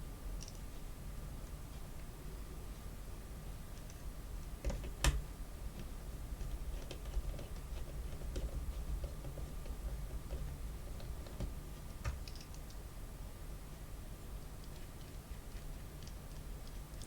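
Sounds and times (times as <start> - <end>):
low steady hum: 0.0 - 17.0
small clicks and taps: 0.4 - 0.6, 5.8 - 12.8.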